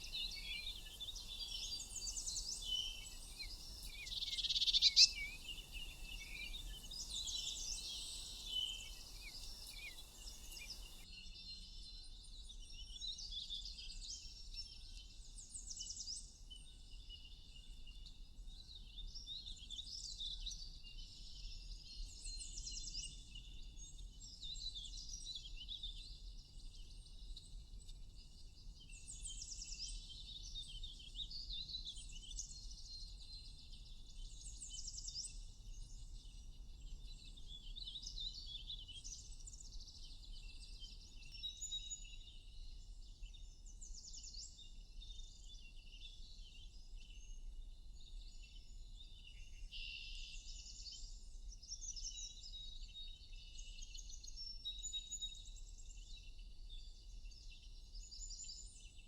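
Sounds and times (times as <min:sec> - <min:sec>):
low background hiss: 0:00.0 - 0:11.0
songbirds chirping and trilling: 0:00.0 - 0:11.0.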